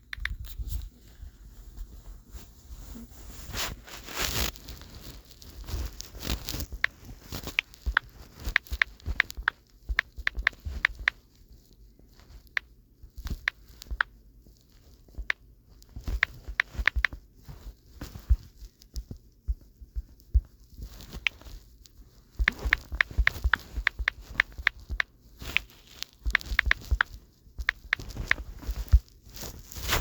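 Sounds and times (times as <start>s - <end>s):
typing taps on a touchscreen: 7.9s - 11.2s.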